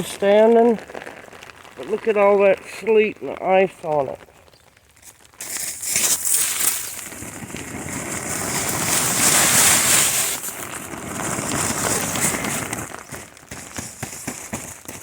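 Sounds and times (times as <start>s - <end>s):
ice sliding down plastic sheeting: 4.8s - 15.0s.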